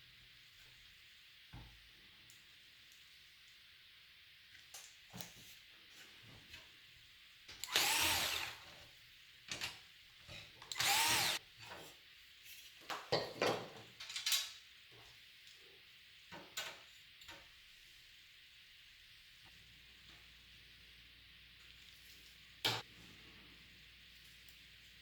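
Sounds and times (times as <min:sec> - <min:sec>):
electric screwdriver running: 0:07.6 - 0:08.7, 0:10.7 - 0:11.4.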